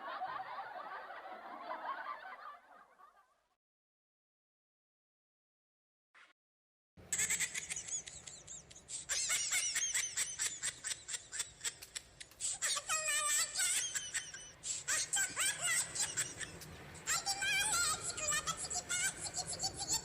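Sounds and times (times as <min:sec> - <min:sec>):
squeaky high-pitched laughter: 0:07.1 - 0:20.0.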